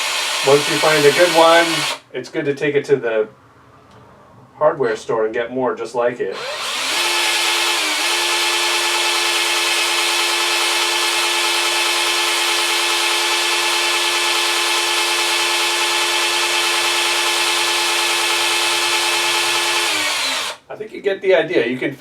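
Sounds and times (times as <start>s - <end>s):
electric drill grinding into metal: 0.0s - 2.0s, 6.4s - 20.6s.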